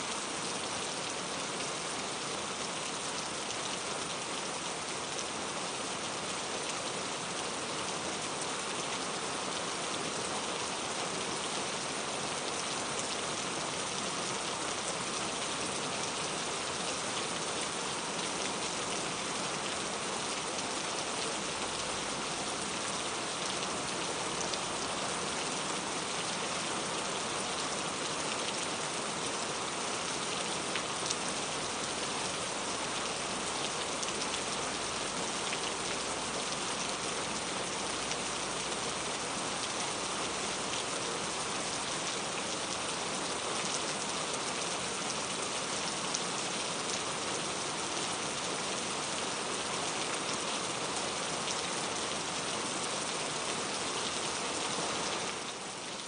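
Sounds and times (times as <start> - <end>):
steady rain pattering: 0.0 - 56.0.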